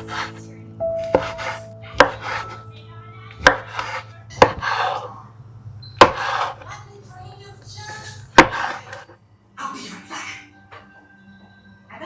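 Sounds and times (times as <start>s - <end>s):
knife chopping on cutting board: 0.0s - 0.4s, 1.0s - 2.6s, 3.4s - 5.1s, 6.0s - 6.6s, 8.3s - 9.1s.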